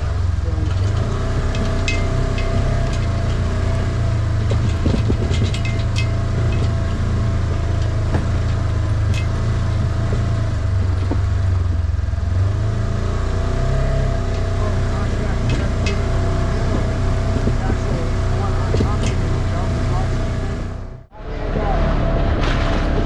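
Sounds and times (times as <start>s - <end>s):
light rattles and clicks: 0.0s - 12.2s, 14.2s - 20.7s
vehicle engine running: 0.0s - 23.0s.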